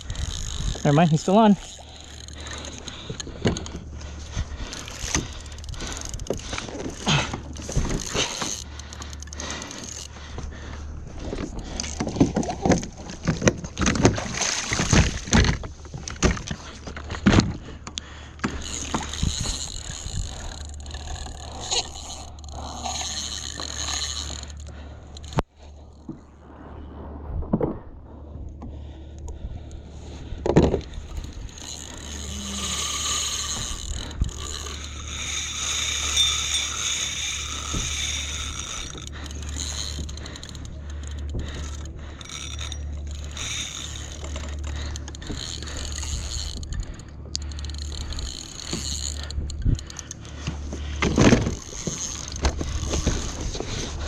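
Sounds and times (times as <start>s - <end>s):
fishing reel being cranked: 0.0s - 26.0s, 30.7s - 54.0s
steady low hum: 0.0s - 54.0s
water splashing: 13.7s - 15.4s.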